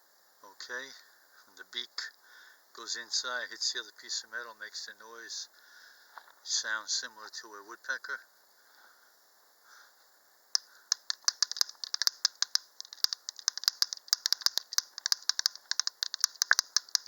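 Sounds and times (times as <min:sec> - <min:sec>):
metal beak clicking on metal: 0:10.6 - 0:17.0.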